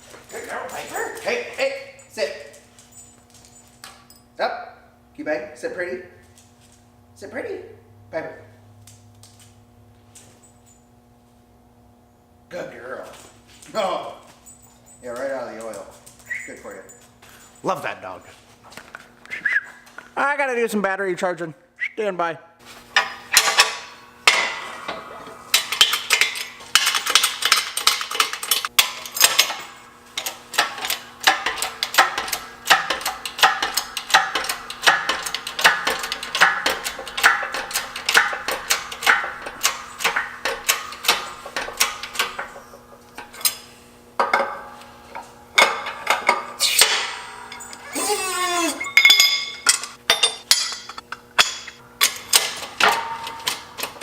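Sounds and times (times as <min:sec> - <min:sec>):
sharp metallic clinks and knocks: 0:00.0 - 0:04.4, 0:14.2 - 0:17.9, 0:45.2 - 0:53.7
steady low hum: 0:00.0 - 0:48.0.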